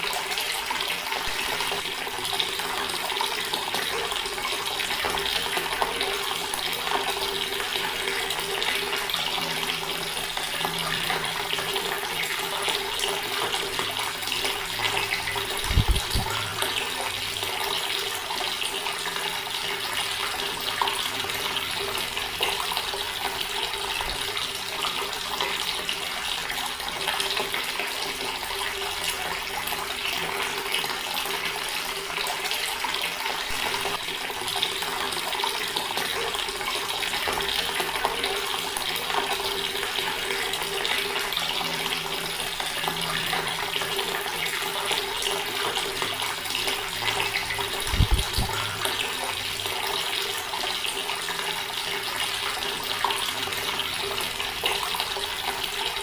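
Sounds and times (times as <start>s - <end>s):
water running from a tap: 0.0s - 56.0s.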